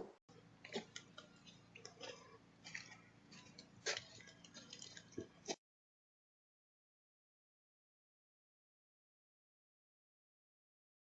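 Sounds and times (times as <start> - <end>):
low steady hum: 0.0 - 5.6
faint clicks and taps: 0.6 - 5.6.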